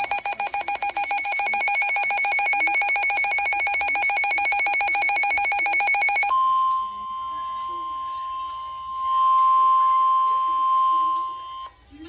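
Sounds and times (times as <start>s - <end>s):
buzzy electronic data tones: 0.0s - 6.3s.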